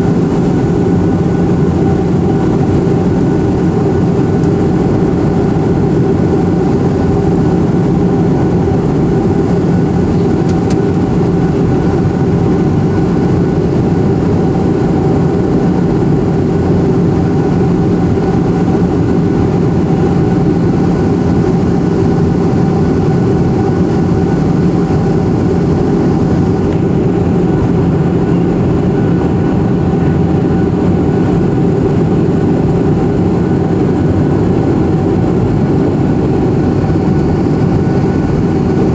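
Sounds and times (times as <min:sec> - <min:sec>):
rushing air: 0:00.0 - 0:03.4
airplane engines rumbling: 0:00.0 - 0:38.9.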